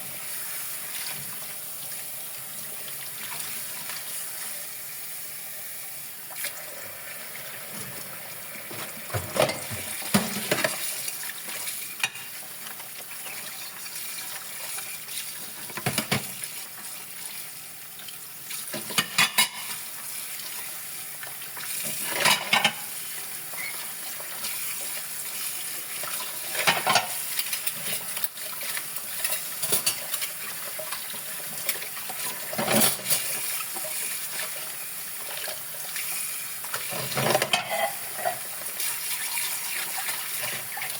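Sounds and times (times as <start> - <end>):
dishes clinking: 9.1 - 10.8, 18.8 - 19.8, 22.1 - 22.9, 26.6 - 27.9, 36.9 - 38.5
water running and scrubbing: 18.5 - 40.9.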